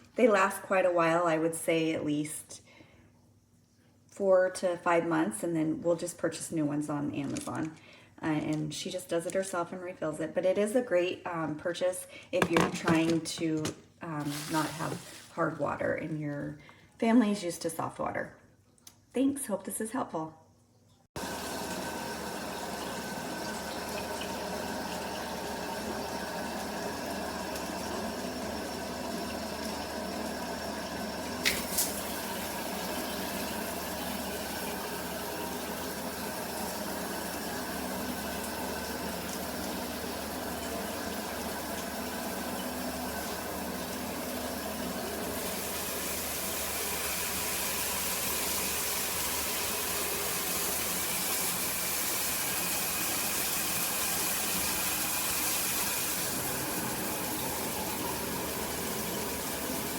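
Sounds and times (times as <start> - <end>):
water spraying from shower head: 14.1 - 15.4, 21.2 - 59.9.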